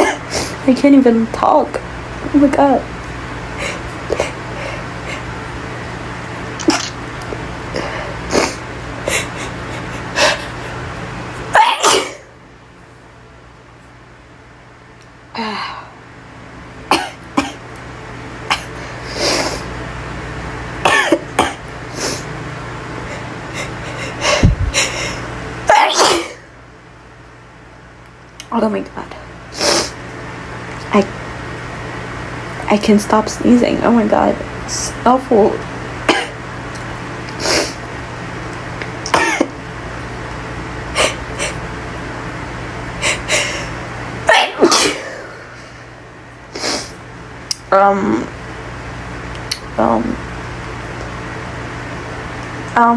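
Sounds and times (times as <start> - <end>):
woman clearing her throat: 0.0 - 0.3, 11.6 - 12.3, 16.9 - 17.6, 20.9 - 21.6, 25.7 - 26.4, 36.1 - 36.4, 39.1 - 39.6, 44.3 - 45.3
woman coughing: 0.0 - 0.4, 11.6 - 12.3, 16.9 - 17.6, 18.5 - 18.8, 20.8 - 21.6, 25.7 - 26.5, 36.1 - 36.4, 39.1 - 39.6, 44.3 - 45.4
steady low hum: 0.0 - 52.9
woman sneezing: 11.5 - 12.3, 25.7 - 26.5, 39.1 - 39.5, 44.3 - 45.4.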